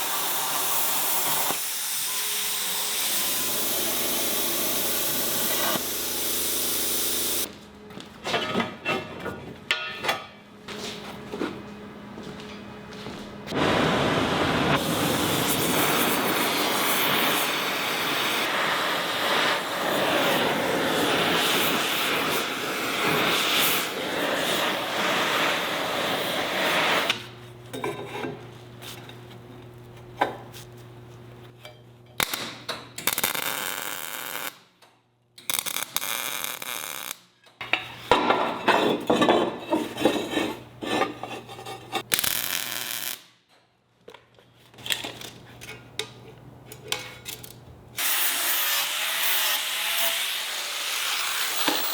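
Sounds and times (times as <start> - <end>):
metal cutting or grinding: 48.0 - 51.9.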